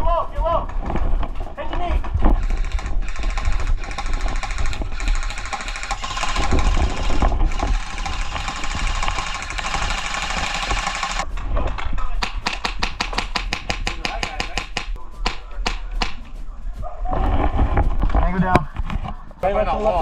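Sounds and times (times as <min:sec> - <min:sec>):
airsoft guns firing: 0:02.4 - 0:11.2, 0:12.2 - 0:16.2.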